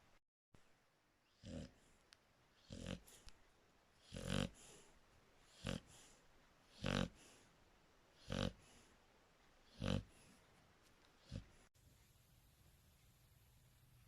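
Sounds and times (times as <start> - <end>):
dog snoring: 1.3 - 1.9, 2.6 - 3.2, 4.0 - 4.9, 5.5 - 7.4, 8.2 - 8.9, 9.6 - 10.3, 11.2 - 11.7.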